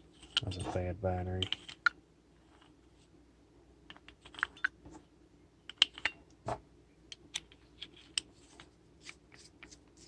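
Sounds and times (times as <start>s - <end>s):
clicks of handling plastic parts: 7.1s - 9.8s.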